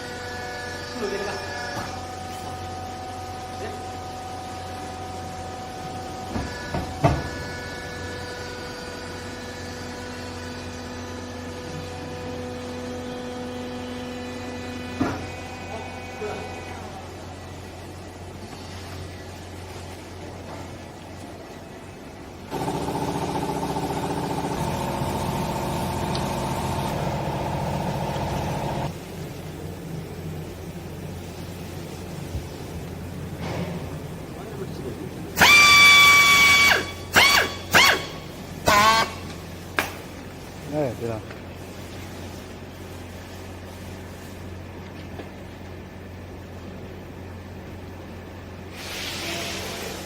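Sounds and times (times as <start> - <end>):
baler motor humming: 22.5 - 29.0
hydraulic pump whining: 22.5 - 29.0, 35.4 - 39.4.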